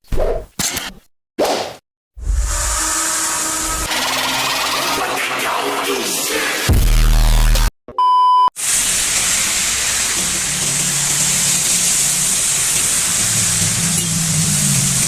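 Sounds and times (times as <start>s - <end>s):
loud low electrical buzz: 2.2s - 3.9s
short beep: 7.9s - 8.5s
heavy rain hissing: 8.6s - 15.0s.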